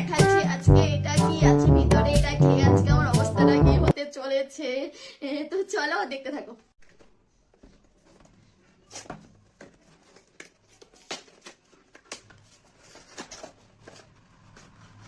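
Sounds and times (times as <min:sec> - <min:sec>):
packaging rustling and tearing: 0:09.9 - 0:15.0.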